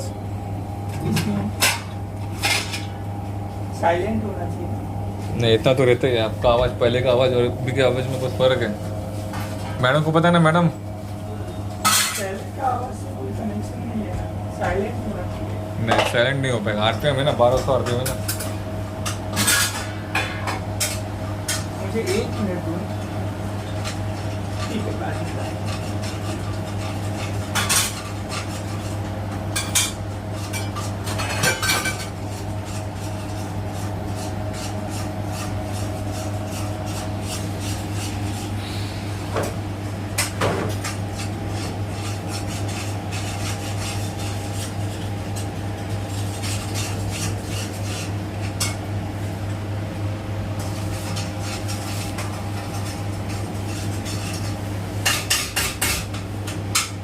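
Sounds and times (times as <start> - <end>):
washing machine humming: 0.0 - 57.0.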